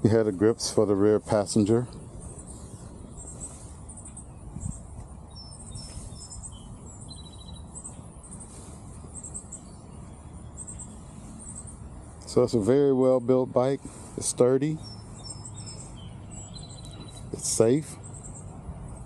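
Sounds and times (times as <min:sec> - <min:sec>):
small birds chirping: 0:00.0 - 0:19.0
whistled bird notes: 0:02.2 - 0:11.8, 0:14.8 - 0:18.5.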